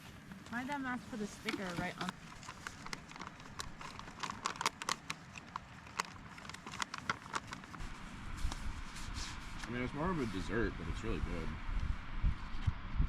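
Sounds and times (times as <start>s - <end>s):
clicks and crinkling of handling: 0.0s - 7.8s.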